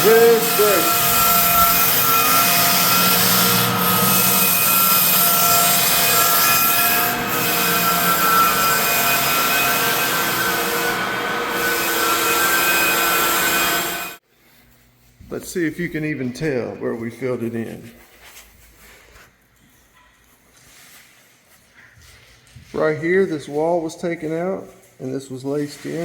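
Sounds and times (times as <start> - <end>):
floor sander grinding: 0.0 - 14.2.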